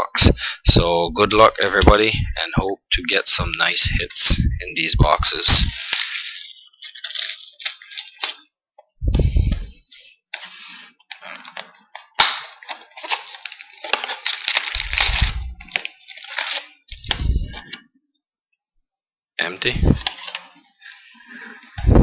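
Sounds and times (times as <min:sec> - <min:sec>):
plastic wrap crinkling and tearing: 0:05.2 - 0:08.5, 0:10.4 - 0:17.6, 0:20.0 - 0:21.8.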